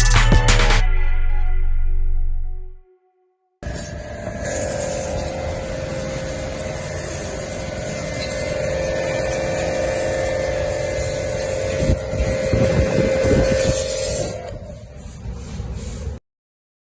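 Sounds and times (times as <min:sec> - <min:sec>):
pressure washer humming: 0:03.6 - 0:15.1.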